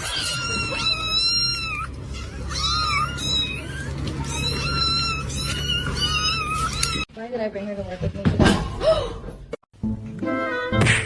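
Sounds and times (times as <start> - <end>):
cat meowing: 0.0 - 7.1.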